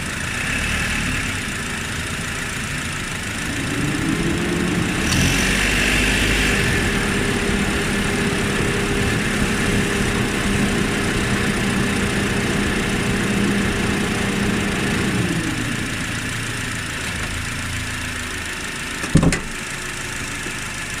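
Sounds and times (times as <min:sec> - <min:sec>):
car engine running: 0:00.0 - 0:21.0
sharp thump: 0:19.1 - 0:19.5.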